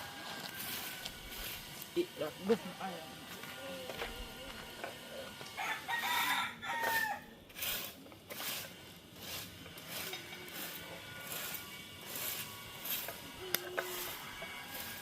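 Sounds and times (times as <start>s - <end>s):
rooster crowing: 0.0s - 1.4s, 5.5s - 7.4s, 13.9s - 15.0s.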